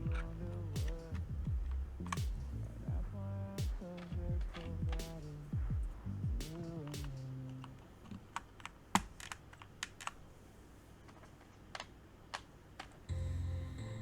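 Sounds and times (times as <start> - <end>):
mechanical keyboard keys clacking: 6.6 - 10.2, 11.7 - 13.1
background music: 13.1 - 14.0.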